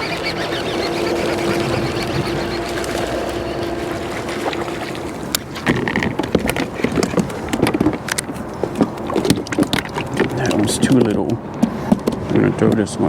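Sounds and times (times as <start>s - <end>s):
fishing reel cranking hum: 0.0s - 6.7s
water: 0.0s - 13.0s
wind: 0.0s - 13.0s
clicks and knocks on kayak: 5.3s - 13.0s.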